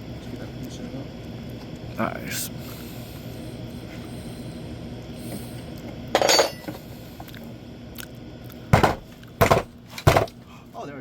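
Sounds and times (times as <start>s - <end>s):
metal tool clanking: 6.2s - 6.8s.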